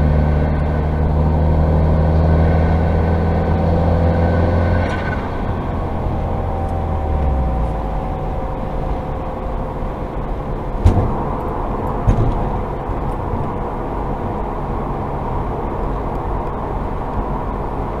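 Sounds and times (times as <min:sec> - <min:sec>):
car engine: 0:00.0 - 0:18.0.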